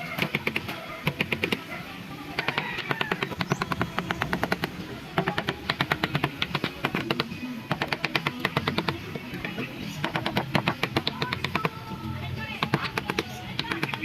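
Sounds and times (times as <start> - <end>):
background song with singing: 0.0 - 14.0
rapid sharp taps: 2.4 - 11.8.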